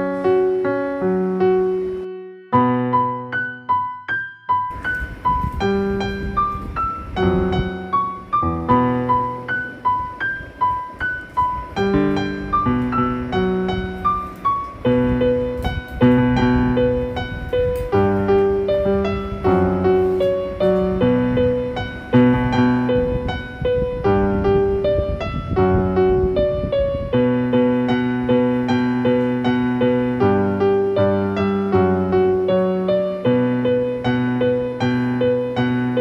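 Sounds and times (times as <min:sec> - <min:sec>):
piano melody: 0:00.0 - 0:36.0.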